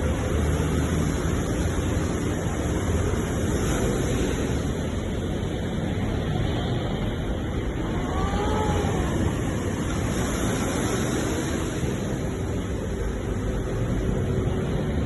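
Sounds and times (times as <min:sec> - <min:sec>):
sea waves washing onto shore: 0:00.0 - 0:15.0
faint gliding cry: 0:06.0 - 0:13.0.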